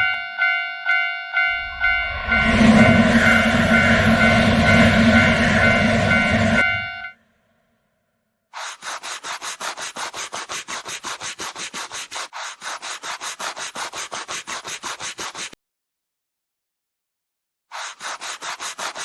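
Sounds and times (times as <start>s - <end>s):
train clattering past: 1.4s - 7.2s.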